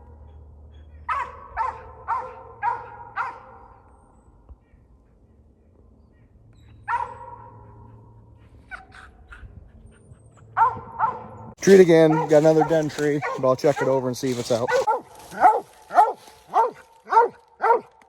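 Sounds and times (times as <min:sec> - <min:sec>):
dog barking: 0:01.1 - 0:03.7, 0:06.9 - 0:08.0, 0:10.5 - 0:18.0.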